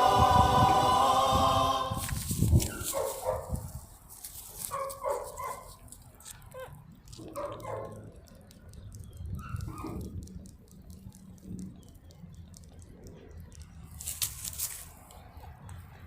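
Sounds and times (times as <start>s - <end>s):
choir-style background music: 0.0s - 2.4s.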